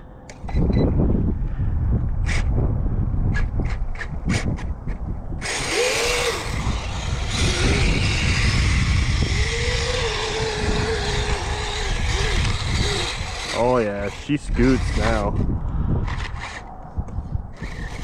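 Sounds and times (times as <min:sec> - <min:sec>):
electric motor and gear whine: 0:03.3 - 0:18.0.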